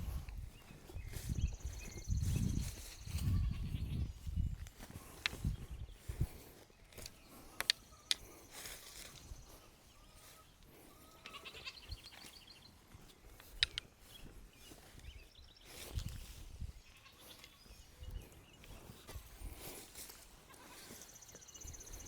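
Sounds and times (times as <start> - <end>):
sharp clicks and taps: 7.0 - 8.2, 13.4 - 13.9
goats bleating faintly: 10.9 - 11.9.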